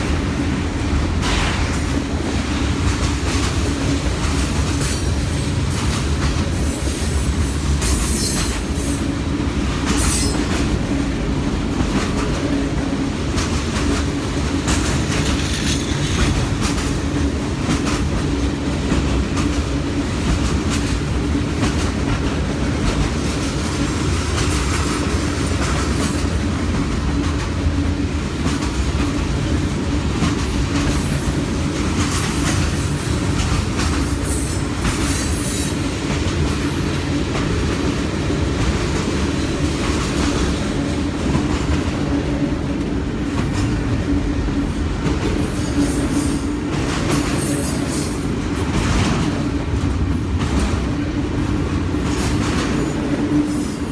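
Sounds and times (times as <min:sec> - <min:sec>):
freight train rolling past: 0:00.0 - 0:53.9.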